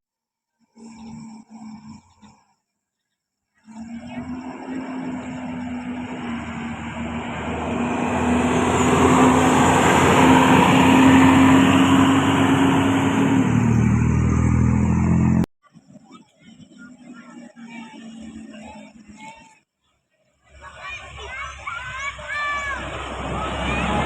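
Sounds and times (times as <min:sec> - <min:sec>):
bus driving past: 0:03.8 - 0:15.5, 0:21.0 - 0:24.0.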